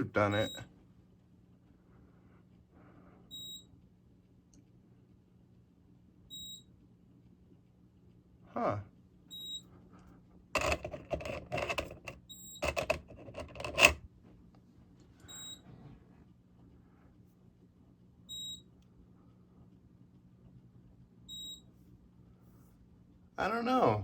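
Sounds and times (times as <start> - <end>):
rattling and scraping handling noise: 10.6 - 14.0.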